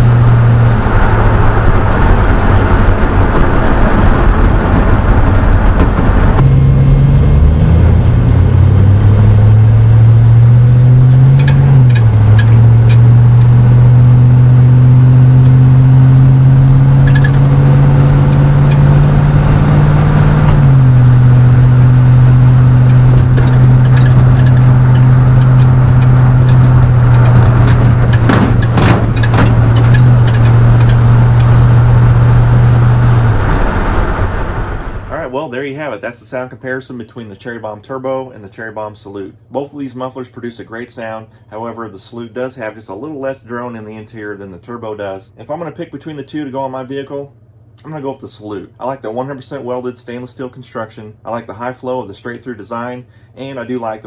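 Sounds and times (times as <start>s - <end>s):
engine exhaust drone accelerating: 0.0s - 35.4s.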